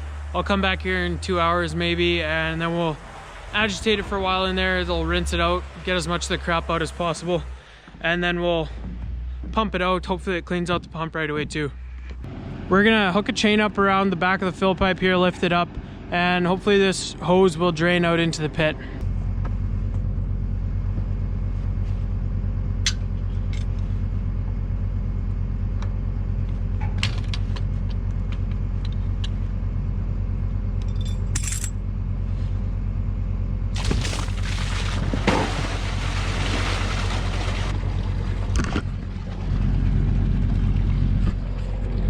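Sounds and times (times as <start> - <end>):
tractor engine running: 0.0 - 42.0
chain clinking: 30.8 - 31.8
liquid rushing from hose: 33.8 - 37.8.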